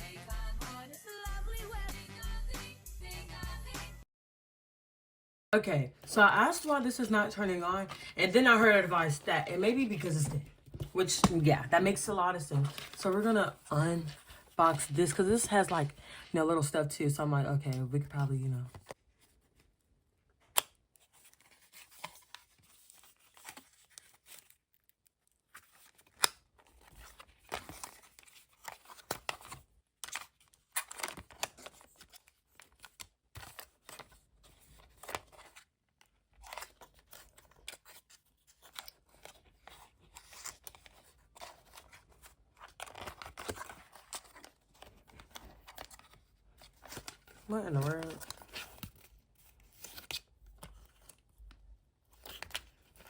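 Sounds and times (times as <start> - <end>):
packaging tearing and rustling: 21.0 - 51.3.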